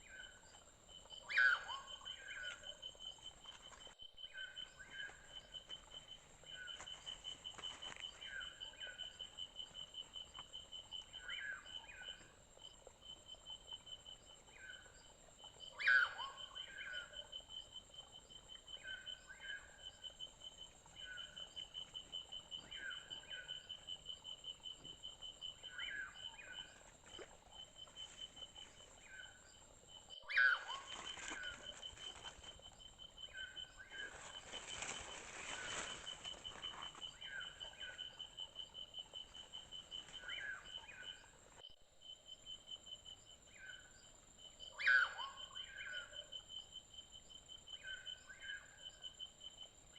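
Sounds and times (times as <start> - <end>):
insect pulsing trill: 0.0 - 49.7.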